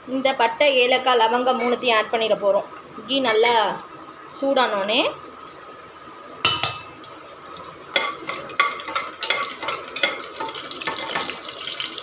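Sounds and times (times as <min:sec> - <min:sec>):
spices frying in hot oil: 0:00.2 - 0:12.0.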